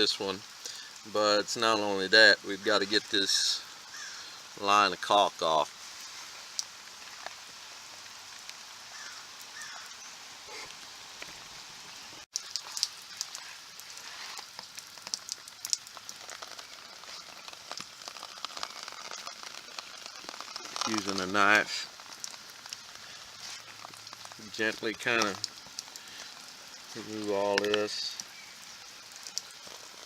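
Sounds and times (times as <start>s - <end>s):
raindrops ticking: 0.0s - 30.0s
steady rain falling: 0.0s - 30.0s.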